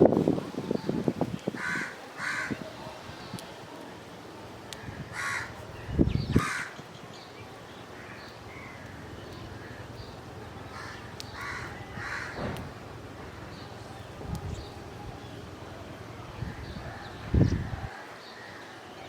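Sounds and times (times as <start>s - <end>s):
crow cawing: 1.6s - 2.6s, 4.8s - 5.6s, 6.3s - 6.8s, 8.0s - 9.8s, 10.7s - 12.6s.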